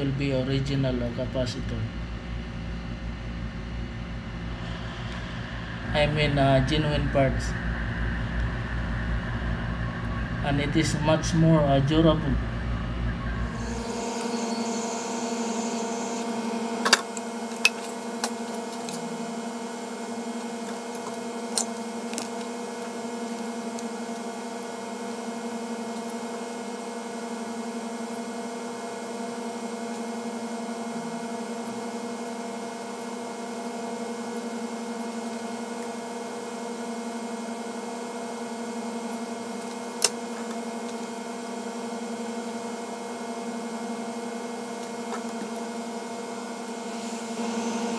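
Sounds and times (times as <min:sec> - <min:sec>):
electrical hum: 0:00.0 - 0:47.9.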